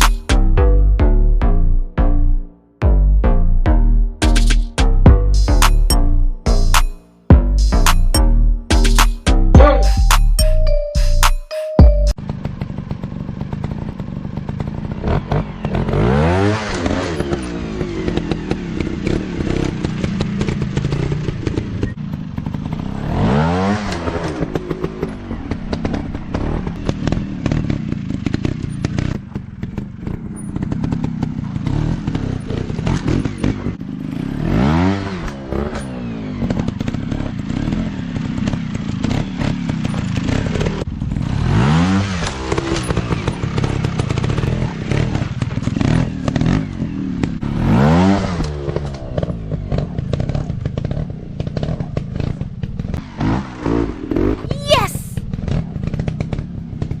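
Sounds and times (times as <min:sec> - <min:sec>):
dirt bike engine revving: 0:14.8 - 0:21.8, 0:31.6 - 0:50.4.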